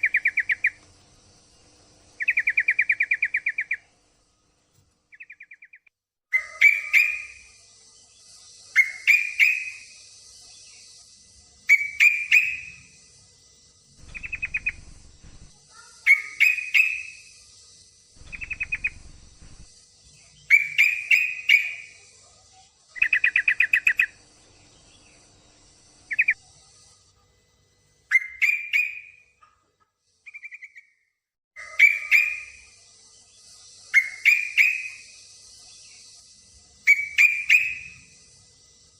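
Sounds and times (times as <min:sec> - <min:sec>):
steady high hiss: 0:06.7 - 0:28.1, 0:32.0 - 0:38.9
bulbul chirping calls: 0:14.0 - 0:15.5, 0:16.1 - 0:17.3, 0:18.2 - 0:19.7, 0:26.1 - 0:26.4.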